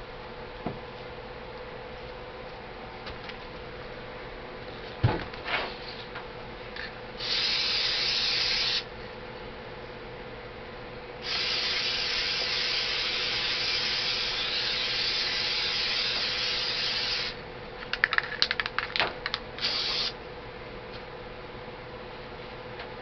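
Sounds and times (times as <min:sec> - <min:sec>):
aerosol spray hissing: 0:07.2 - 0:08.8, 0:11.2 - 0:17.4, 0:19.6 - 0:20.2
clicks and rattles: 0:17.8 - 0:19.5.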